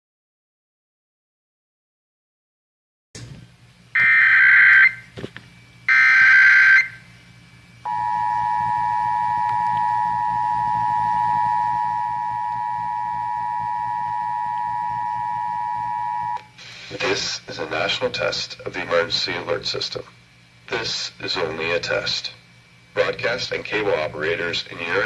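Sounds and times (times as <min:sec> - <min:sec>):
buzzy screeching data bursts: 0:04.0 - 0:05.0, 0:05.9 - 0:07.0, 0:09.7 - 0:16.4
two-tone attention signal: 0:07.9 - 0:16.4.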